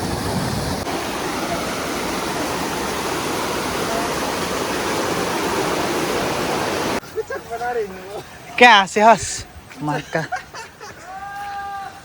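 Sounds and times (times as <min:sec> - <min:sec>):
rushing falling water: 0:00.0 - 0:07.6.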